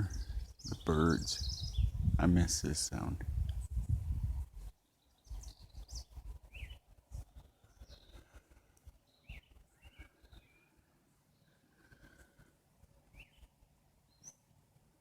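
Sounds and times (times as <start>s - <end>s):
birds singing and chirping: 0.0s - 4.0s, 4.8s - 6.8s, 7.6s - 8.4s, 9.1s - 10.7s, 13.1s - 13.5s
low rumble on microphone: 0.0s - 4.7s.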